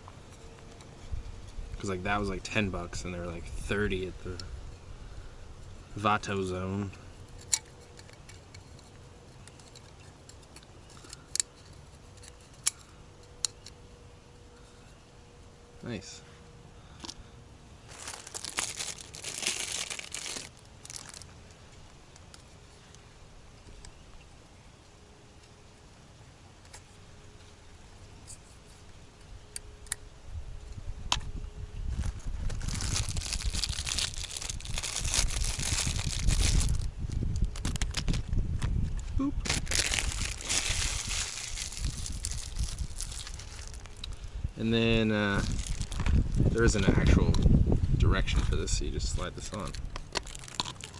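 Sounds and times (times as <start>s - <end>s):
plastic packaging crinkling and tearing: 17.9s - 21.6s, 31.9s - 44.2s, 45.1s - 46.8s, 49.0s - 50.9s.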